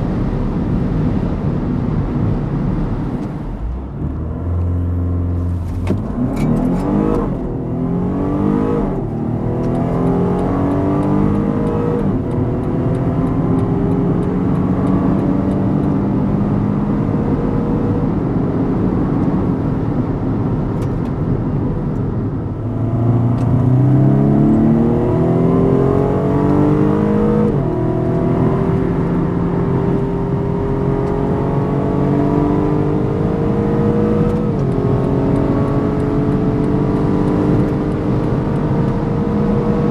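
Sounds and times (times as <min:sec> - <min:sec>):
car engine accelerating hard: 0:00.0 - 0:39.9.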